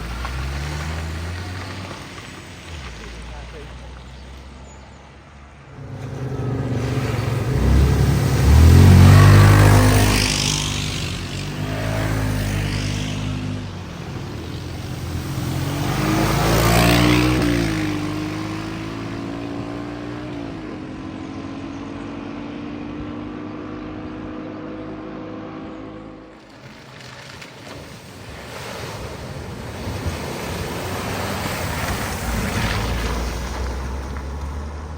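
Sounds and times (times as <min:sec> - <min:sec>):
car engine revving: 0:00.0 - 0:04.6, 0:05.4 - 0:27.2, 0:29.4 - 0:34.9
water spraying hiss: 0:05.8 - 0:19.2, 0:26.6 - 0:34.9.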